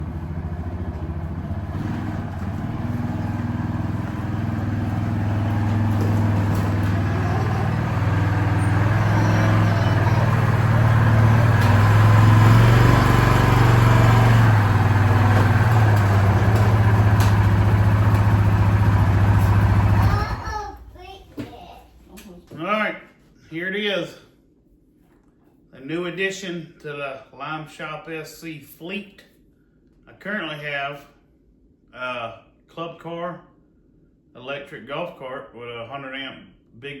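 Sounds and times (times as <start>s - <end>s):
single-cylinder engine running: 0.0s - 21.0s.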